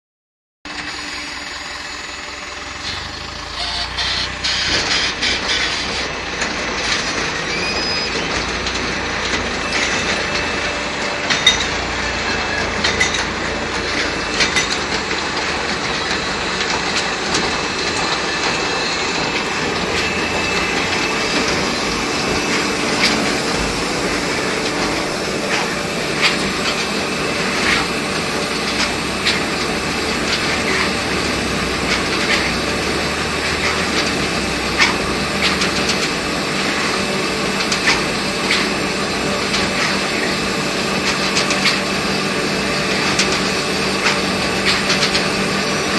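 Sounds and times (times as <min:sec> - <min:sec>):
sharp clicks and knocks: 0:11.2 - 0:18.6.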